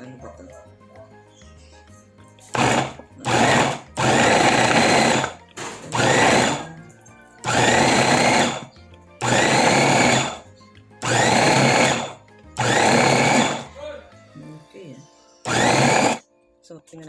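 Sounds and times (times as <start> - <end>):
electric meat grinder whining: 2.5 - 13.8, 15.4 - 16.2.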